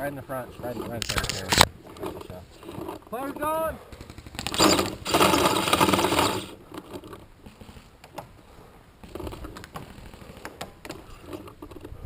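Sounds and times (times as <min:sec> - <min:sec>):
paintball marker firing: 0:03.8 - 0:06.4.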